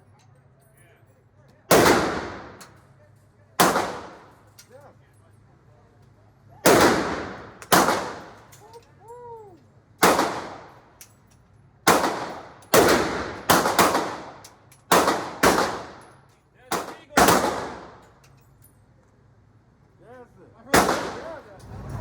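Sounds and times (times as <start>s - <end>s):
echoing gunshots: 1.7s - 2.6s, 3.6s - 4.3s, 6.6s - 8.5s, 10.0s - 10.8s, 11.9s - 16.0s, 16.7s - 18.0s, 20.7s - 21.4s.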